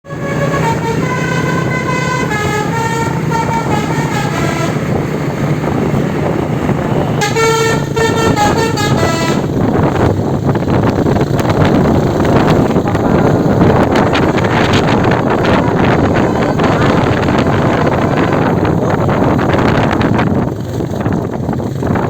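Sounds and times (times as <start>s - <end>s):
musical air horn tune: 0.0s - 10.1s, 14.0s - 18.8s
vehicle noise: 0.0s - 22.0s.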